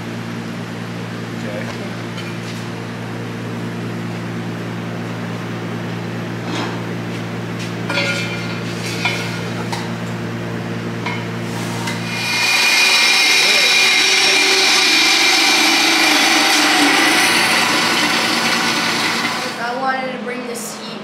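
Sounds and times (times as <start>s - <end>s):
machine hum: 7.9s - 21.0s
hiss with high whine: 11.6s - 19.5s.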